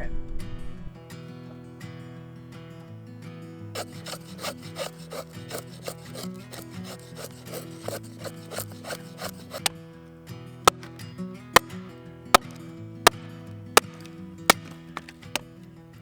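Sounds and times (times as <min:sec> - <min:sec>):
blade rasping on firewood: 0:03.8 - 0:09.8, 0:10.7 - 0:11.0, 0:12.3 - 0:13.2, 0:13.8 - 0:15.4.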